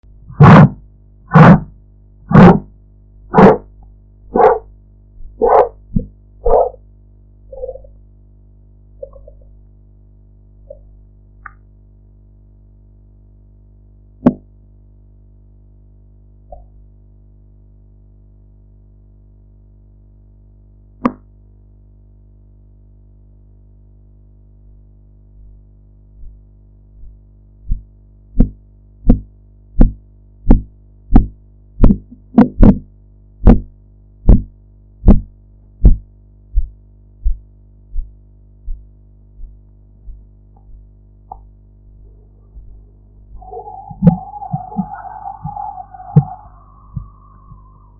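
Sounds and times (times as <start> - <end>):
steady low hum: 0.0 - 47.9
heartbeat thumps through stethoscope: 0.3 - 1.7, 2.3 - 2.7, 26.2 - 41.4, 42.6 - 47.9.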